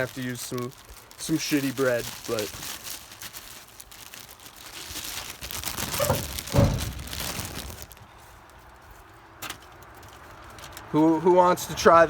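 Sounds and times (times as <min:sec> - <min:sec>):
food wrapping crinkling: 0:00.0 - 0:11.0
short low thud: 0:06.2 - 0:07.2.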